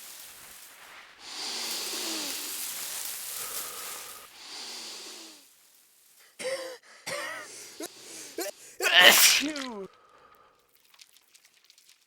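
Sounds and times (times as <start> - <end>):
person breathing in with wheeze: 1.2 - 5.5, 6.2 - 10.7
short voiced gasps: 6.8 - 10.6.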